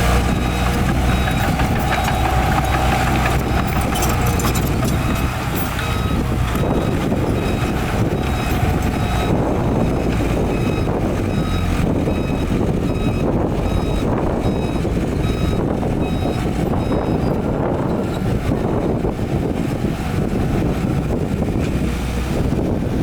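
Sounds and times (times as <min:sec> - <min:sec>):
diesel engine rumble: 0:00.0 - 0:23.0
back-up alarm beeping: 0:00.3 - 0:17.8.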